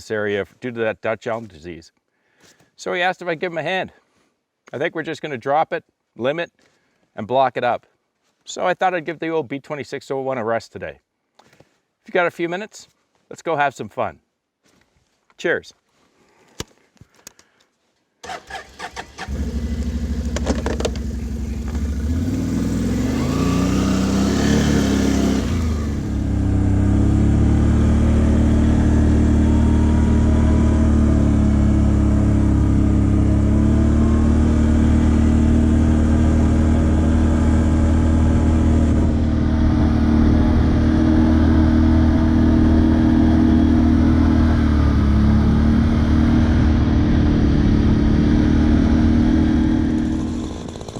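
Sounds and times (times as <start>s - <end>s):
engine starting and running: 18.2s - 26.6s, 49.7s - 50.9s.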